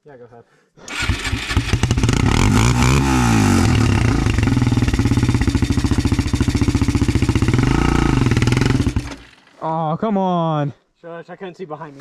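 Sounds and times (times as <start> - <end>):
quad engine revving: 0.9 - 9.4.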